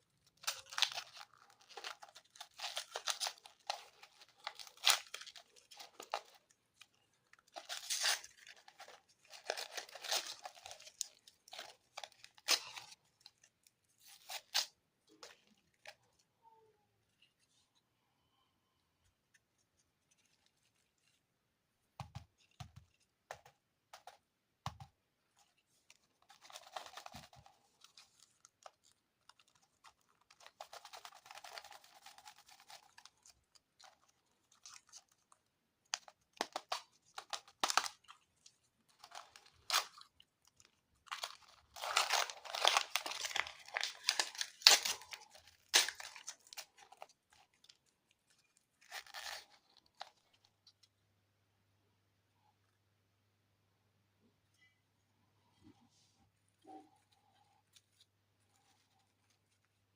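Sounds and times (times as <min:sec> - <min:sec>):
plastic packaging crinkling: 0:00.0 - 0:16.0, 0:25.9 - 0:50.5
plastic packaging tearing: 0:00.3 - 0:06.5, 0:07.4 - 0:14.8, 0:35.9 - 0:38.2, 0:39.0 - 0:47.9, 0:48.8 - 0:50.2.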